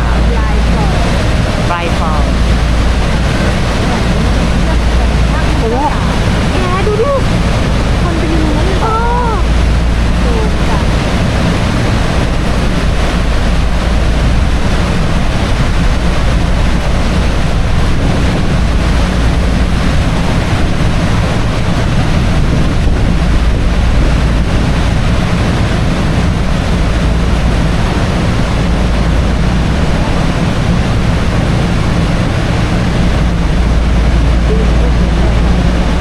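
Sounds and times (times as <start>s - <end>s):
deep rumble: 0.0s - 36.0s
falling water: 0.0s - 36.0s
wind buffeting microphone: 0.0s - 36.0s.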